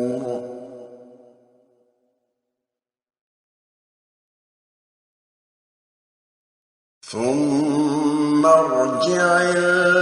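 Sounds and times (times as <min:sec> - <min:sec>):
man reciting melodically: 0:00.0 - 0:01.0, 0:07.0 - 0:10.0
voice echo: 0:00.0 - 0:01.6, 0:07.0 - 0:10.0.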